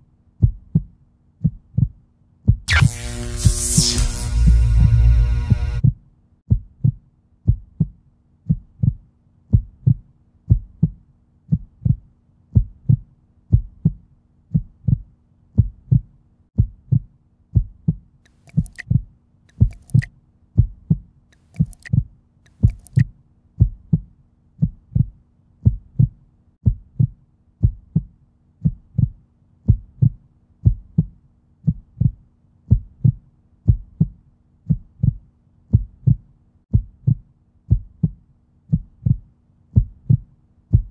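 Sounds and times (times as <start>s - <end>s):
heartbeat thuds: 0.4s - 2.7s, 3.4s - 23.0s, 23.6s - 40.9s
faint hum: 2.7s - 5.8s
sharp clicks: 18.3s - 18.8s, 19.5s - 20.1s, 21.4s - 21.9s, 22.5s - 23.0s.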